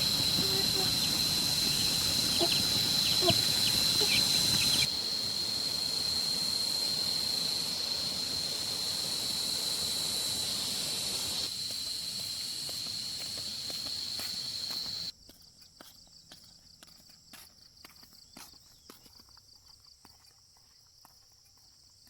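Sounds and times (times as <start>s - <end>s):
insects droning: 0.0s - 16.8s
short bird chirps: 0.4s - 4.9s.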